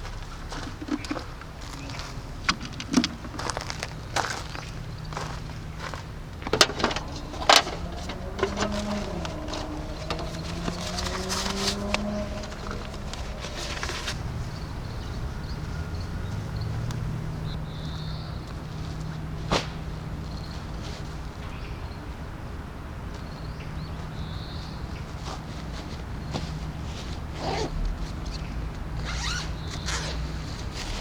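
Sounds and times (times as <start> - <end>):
gear rustling and clicking: 6.4 - 15.2.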